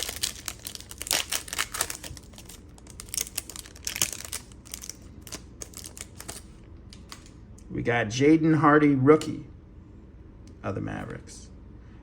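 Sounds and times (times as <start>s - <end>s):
plastic wrapper crinkling and tearing: 0.0s - 7.3s.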